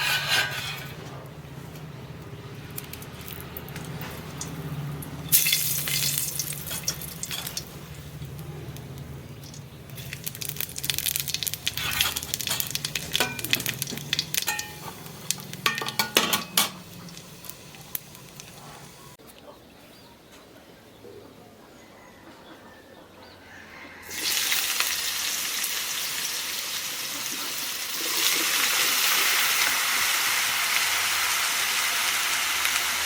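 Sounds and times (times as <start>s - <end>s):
spatula scraping a pan: 0.0s - 1.2s, 11.6s - 16.8s
food sizzling in hot oil: 5.3s - 7.8s, 9.3s - 19.0s, 24.1s - 33.0s.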